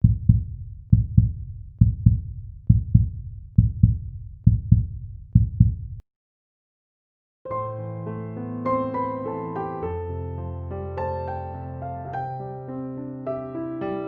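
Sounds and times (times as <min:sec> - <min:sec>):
heartbeat thumps: 0:00.0 - 0:06.0.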